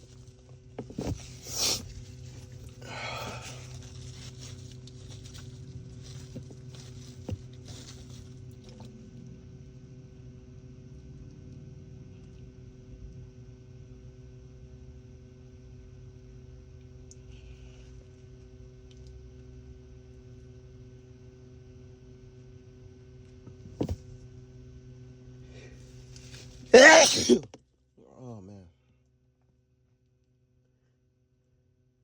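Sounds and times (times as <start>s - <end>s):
low hum of held tones: 0.0s - 26.7s
man sneezing: 1.5s - 1.8s, 2.8s - 3.6s, 26.8s - 27.5s.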